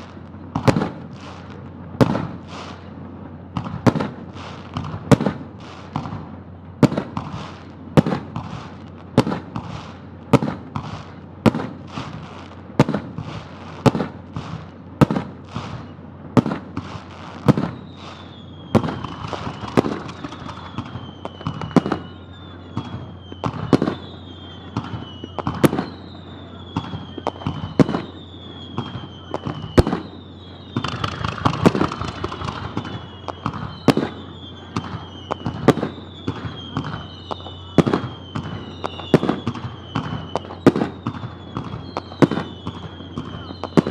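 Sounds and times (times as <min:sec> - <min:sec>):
fireworks whistling downward: 0:00.0 - 0:02.9, 0:03.5 - 0:43.9
fireworks bursting: 0:00.0 - 0:43.9.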